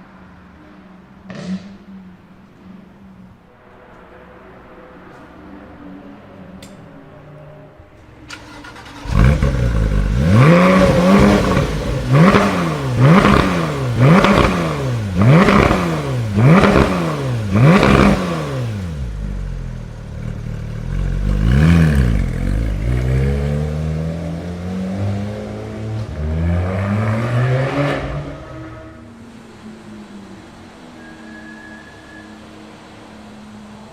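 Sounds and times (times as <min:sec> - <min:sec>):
car engine revving: 0:07.5 - 0:33.9.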